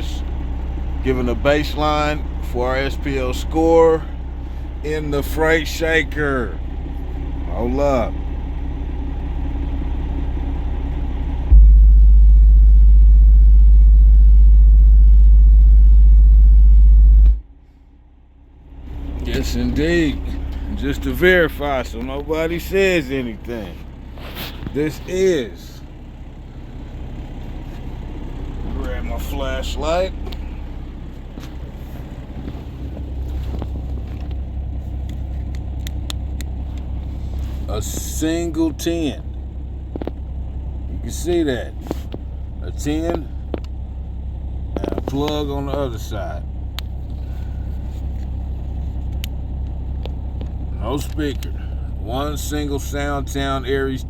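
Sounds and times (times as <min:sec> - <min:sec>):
engine-like rumble: 0:00.0 - 0:54.0
loud bass test tone: 0:09.5 - 0:17.7, 0:18.5 - 0:34.9.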